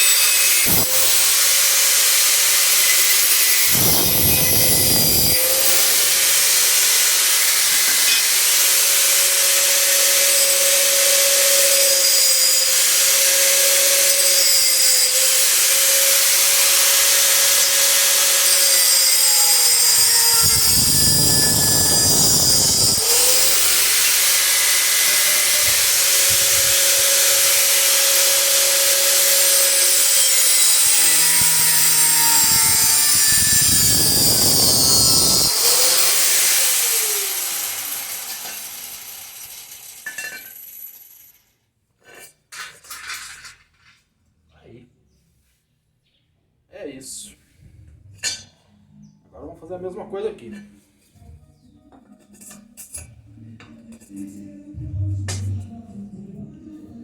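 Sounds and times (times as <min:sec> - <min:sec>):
angle grinder cutting metal: 0:00.0 - 0:41.4.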